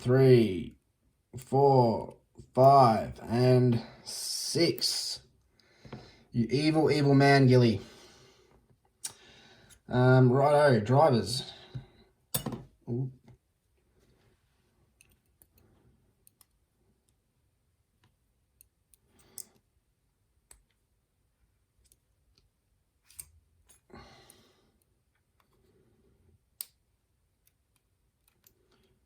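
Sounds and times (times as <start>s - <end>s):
small metal clicks: 18.0s - 19.6s, 27.4s - 29.0s.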